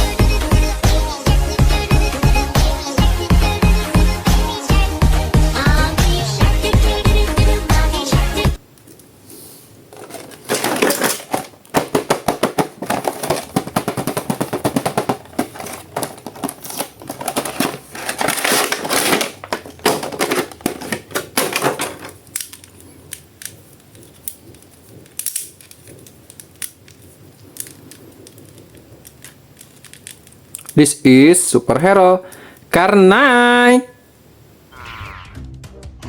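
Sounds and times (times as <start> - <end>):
plastic clicks and rattles: 9.9 - 30.8.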